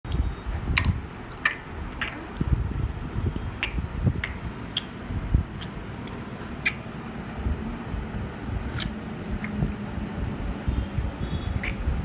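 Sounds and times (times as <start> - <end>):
baby mouth clicking: 0.1 - 2.7, 3.4 - 5.0, 5.6 - 6.8, 8.8 - 9.6, 11.5 - 11.9.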